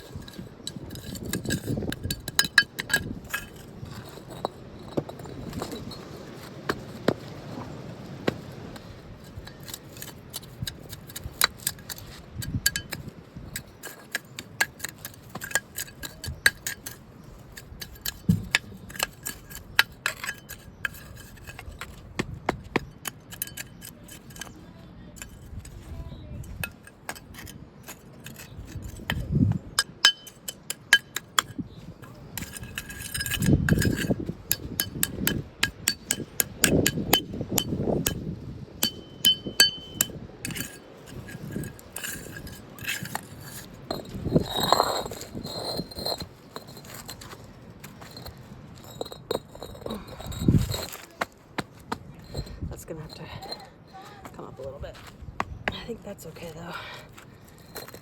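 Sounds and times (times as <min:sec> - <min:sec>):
brick pavers clinking: 0:00.0 - 0:58.0.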